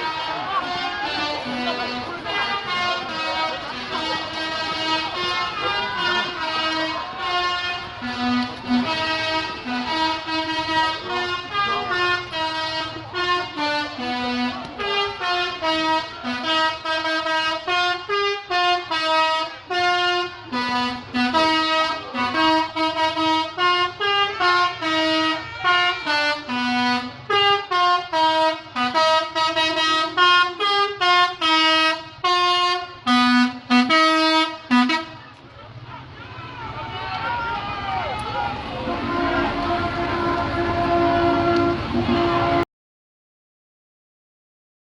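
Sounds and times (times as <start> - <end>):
multi-tone air horns playing a tune: 0.0 - 35.2, 38.5 - 42.7.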